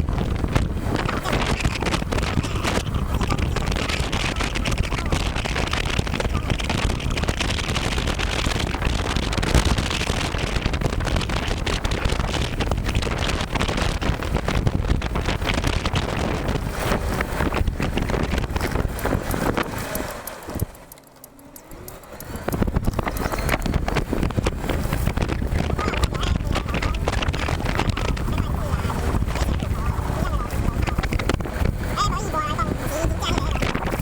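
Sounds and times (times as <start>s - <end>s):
wind rushing over microphone: 0.0s - 34.0s.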